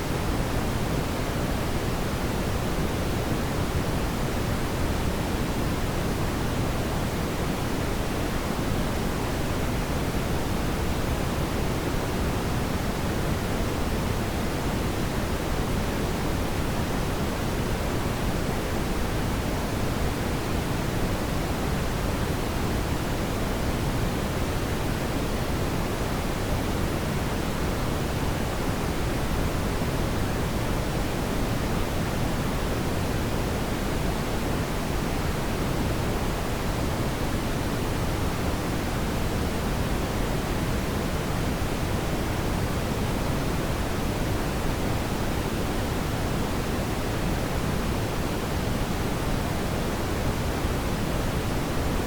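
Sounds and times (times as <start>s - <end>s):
brown noise hiss: 0.0s - 52.0s.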